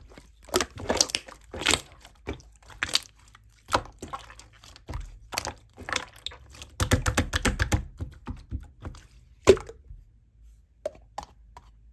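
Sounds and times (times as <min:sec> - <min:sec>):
slime crackling and popping: 0:00.4 - 0:07.8.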